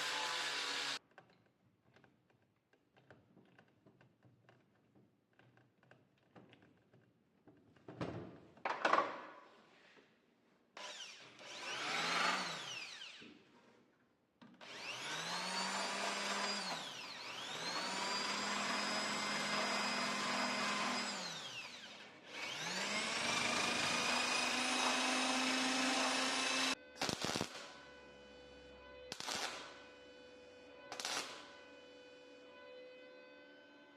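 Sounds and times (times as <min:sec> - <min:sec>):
power tool winding up: 0:00.0 - 0:01.0, 0:10.8 - 0:13.3, 0:14.6 - 0:27.5.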